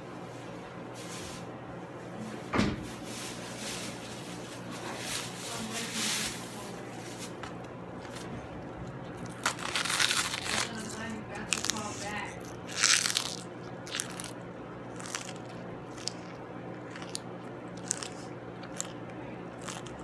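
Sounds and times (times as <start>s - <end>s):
rustling and handling noises: 0.0s - 13.4s
steady low hum: 0.0s - 20.0s.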